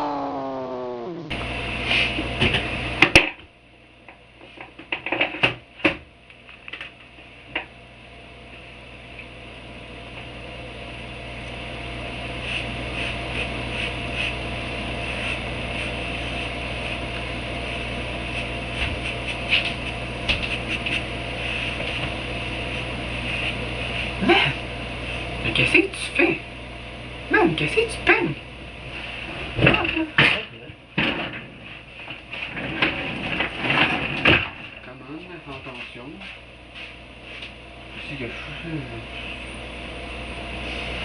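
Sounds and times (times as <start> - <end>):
machine hum: 0.0 - 3.0.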